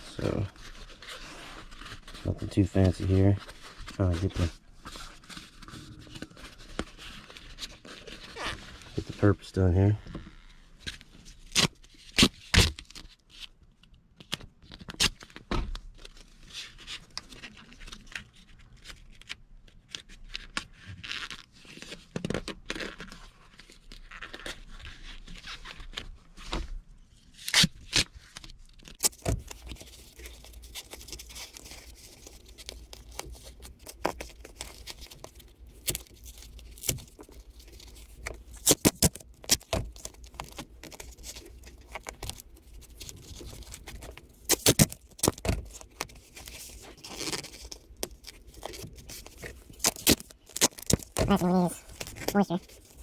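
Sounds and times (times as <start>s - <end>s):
insulation scraping and crinkling: 0.0s - 11.8s, 27.5s - 53.0s
tape tearing: 29.0s - 53.0s.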